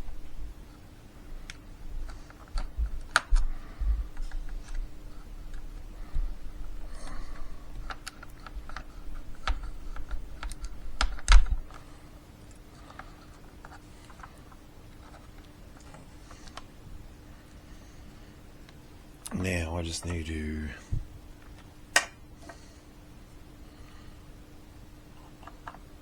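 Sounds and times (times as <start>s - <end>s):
faint steady hum: 0.0s - 26.0s
small parts clicking and tapping: 12.5s - 16.6s.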